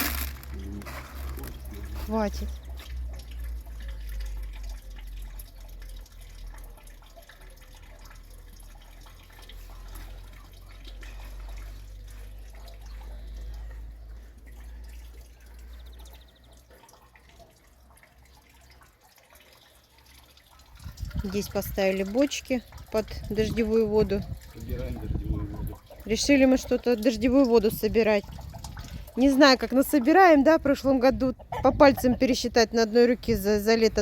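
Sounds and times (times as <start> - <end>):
rain dripping and pattering: 0.0 - 34.0.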